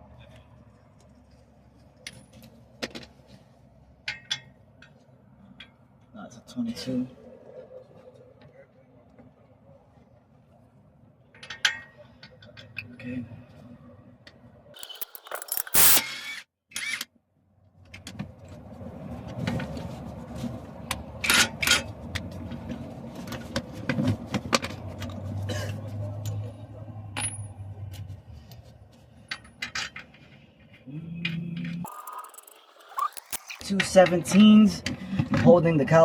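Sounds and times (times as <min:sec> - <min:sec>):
metal tools clinking: 0:14.8 - 0:16.0, 0:31.9 - 0:33.6.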